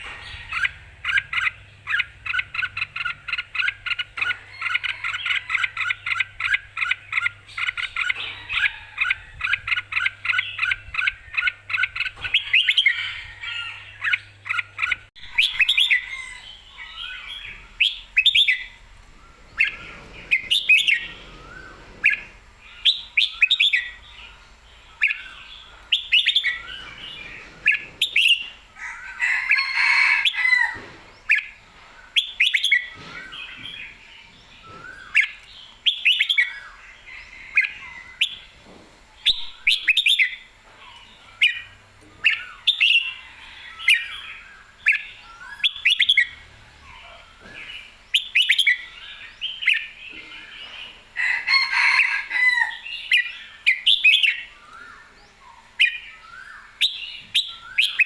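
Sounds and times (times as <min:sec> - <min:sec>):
bird song warbling phrases: 0:00.0 - 0:58.0.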